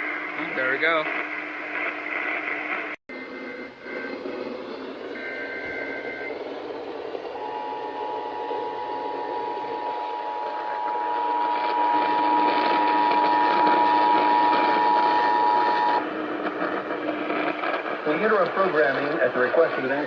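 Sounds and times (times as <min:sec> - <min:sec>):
radio hiss: 0:00.0 - 0:20.0
digital data tones: 0:03.1 - 0:16.0
two-tone attention signal: 0:03.1 - 0:16.0.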